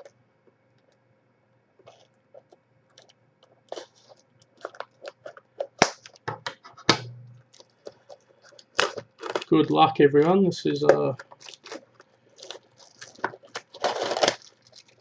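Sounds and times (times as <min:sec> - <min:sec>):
cardboard and plastic wrap crinkling: 0:07.5 - 0:15.0.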